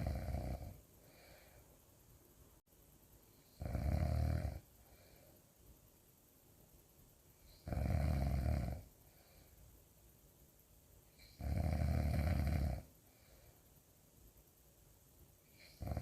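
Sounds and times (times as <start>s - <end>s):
loud snoring: 0.0s - 0.8s, 3.6s - 4.6s, 7.6s - 8.9s, 11.2s - 12.9s, 15.6s - 16.0s.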